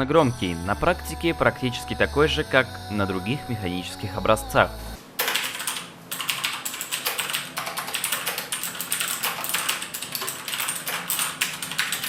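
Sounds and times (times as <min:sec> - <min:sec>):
fast typing on mechanical keyboard: 0:05.2 - 0:12.0.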